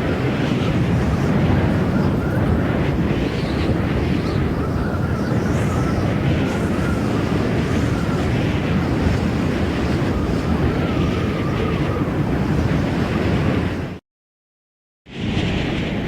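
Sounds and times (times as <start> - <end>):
wind rushing with low rumble: 0.0 - 14.0, 15.1 - 16.0
faint wavering whistle: 0.8 - 12.5.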